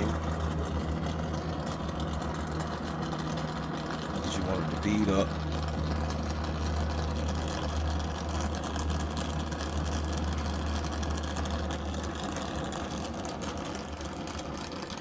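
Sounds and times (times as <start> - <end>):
torch flame roaring: 0.0 - 15.0.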